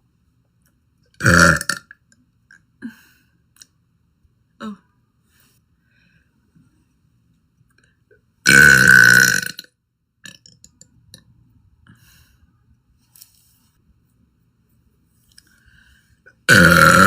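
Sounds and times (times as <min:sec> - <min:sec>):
girl burping: 0:08.5 - 0:09.6, 0:16.5 - 0:17.0.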